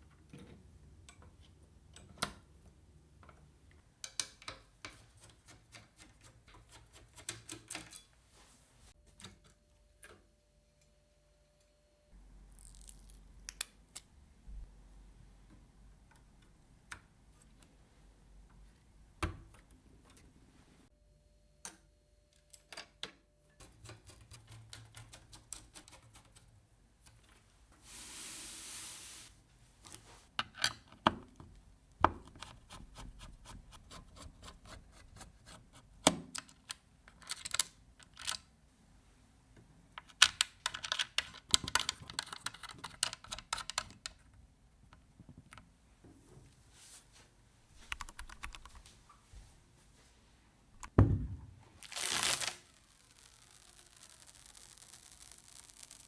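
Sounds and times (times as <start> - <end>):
brief hiss: 27.8 - 29.3
computer parts clicking and clattering: 47.9 - 48.8.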